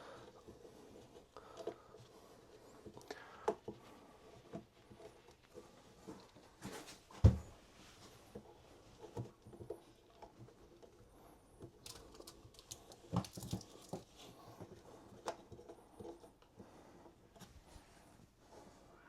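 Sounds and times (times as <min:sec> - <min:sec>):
plastic plumbing fittings clicking: 0:11.6 - 0:14.2.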